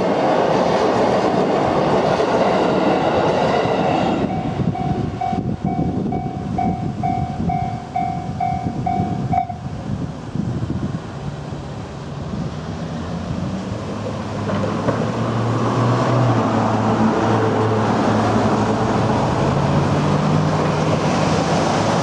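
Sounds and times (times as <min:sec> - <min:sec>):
vehicle engine humming: 0:11.4 - 0:22.0.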